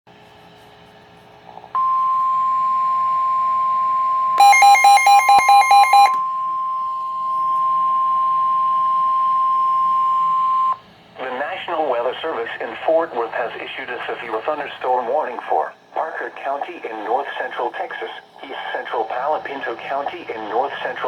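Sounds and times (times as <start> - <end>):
high-pitched alarm tone: 4.4 - 10.8.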